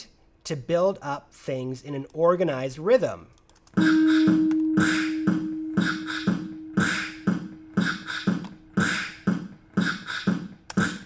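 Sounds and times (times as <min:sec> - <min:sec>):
held low note: 0:03.8 - 0:09.0
vocal percussion beat: 0:03.8 - 0:11.0.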